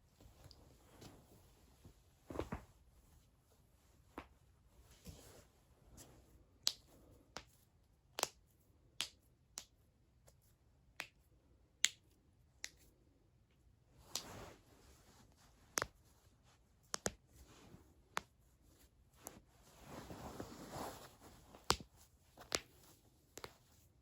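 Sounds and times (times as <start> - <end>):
soft rustle: 0.0 - 7.7, 13.9 - 24.0.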